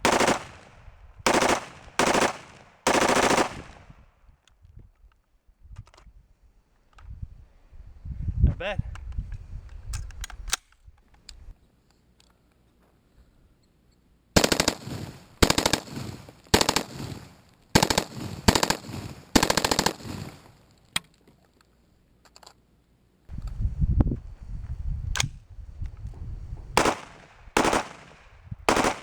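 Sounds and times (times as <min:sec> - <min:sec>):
rifle firing automatic bursts: 0:00.0 - 0:00.6, 0:01.2 - 0:03.8, 0:14.4 - 0:20.4, 0:26.8 - 0:29.0.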